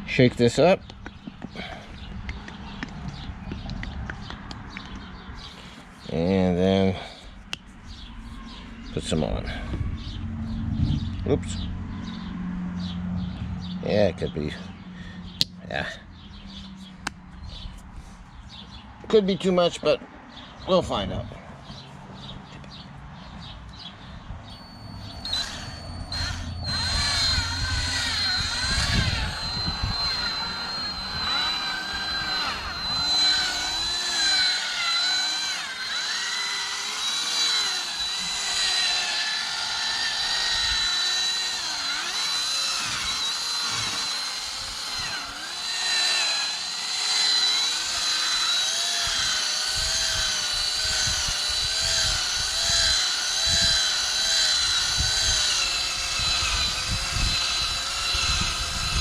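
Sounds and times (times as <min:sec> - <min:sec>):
thin high whine: 0:24.5 - 0:35.4
power drill buffing: 0:24.5 - 0:59.0.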